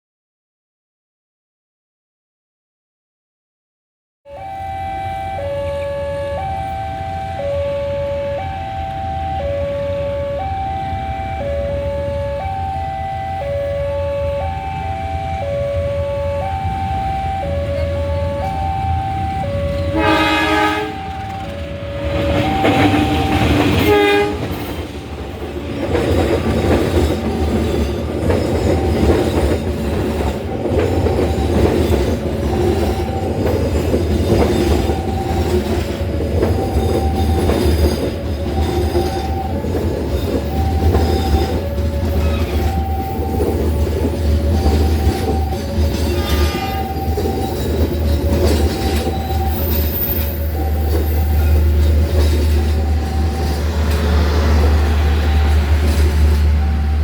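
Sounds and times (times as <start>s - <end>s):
train horn blasting: 4.3s - 24.8s, 44.6s - 47.5s
train rumble and wheel clatter: 4.6s - 57.0s.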